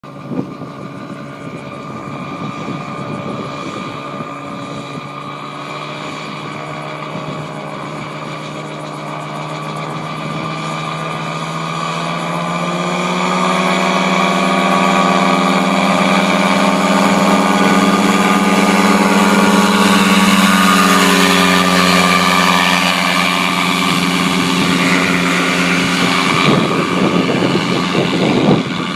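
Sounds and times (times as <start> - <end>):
propeller engine running: 0.0 - 28.9
wind buffeting microphone: 0.1 - 28.9.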